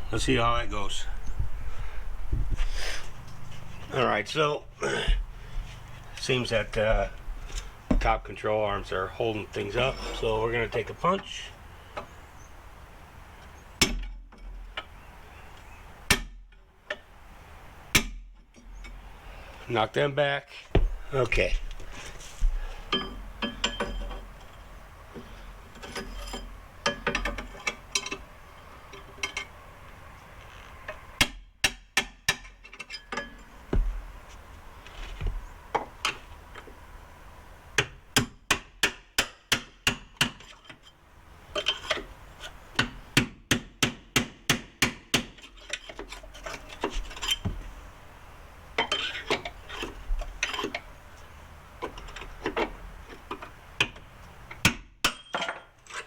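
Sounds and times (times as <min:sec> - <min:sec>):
quiet metal knocks: 0:06.7 - 0:08.4, 0:20.7 - 0:24.5, 0:30.9 - 0:34.2, 0:46.8 - 0:47.8
metal scraping: 0:21.4 - 0:28.3.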